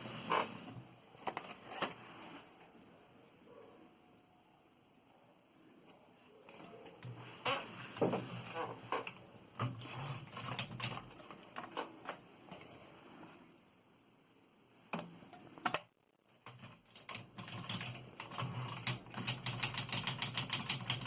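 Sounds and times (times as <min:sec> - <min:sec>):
typewriter keys clicking: 0:10.3 - 0:11.2, 0:16.4 - 0:21.0.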